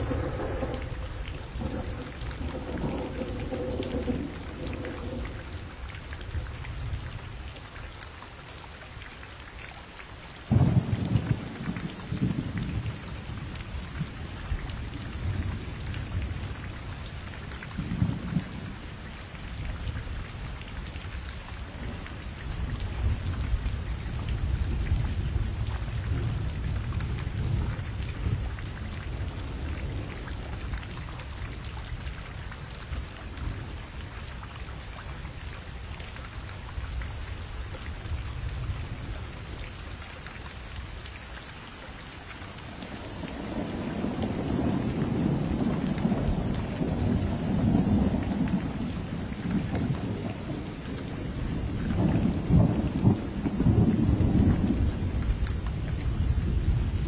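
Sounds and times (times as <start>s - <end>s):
low thunder rumbling: 0.0s - 7.0s, 10.5s - 17.0s, 42.8s - 57.0s
steady rain hiss: 0.0s - 57.0s.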